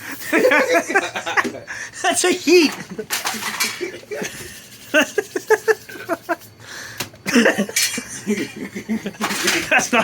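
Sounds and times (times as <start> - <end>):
person laughing: 0.2 - 1.8, 2.8 - 6.6, 7.2 - 10.0.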